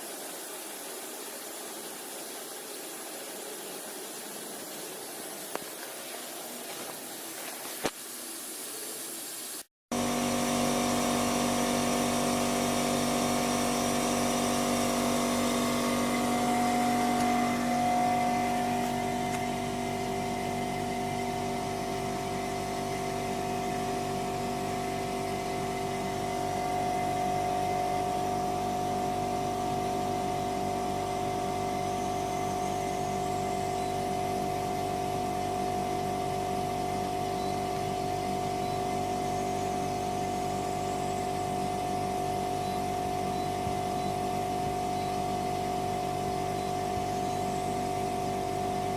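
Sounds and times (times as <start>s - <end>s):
soft hiss: 0.0s - 9.7s
heat pump humming and whining: 0.0s - 48.9s.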